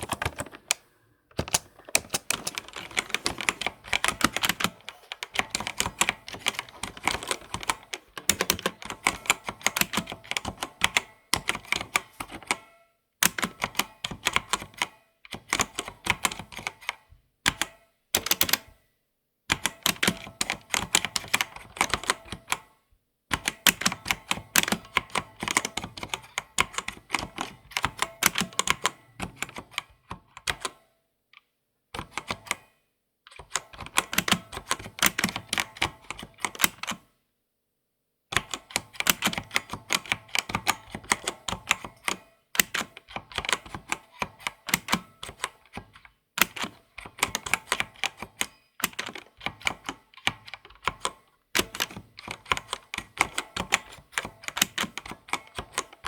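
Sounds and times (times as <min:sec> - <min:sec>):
keyboard typing clicks: 0:00.0 - 0:10.3.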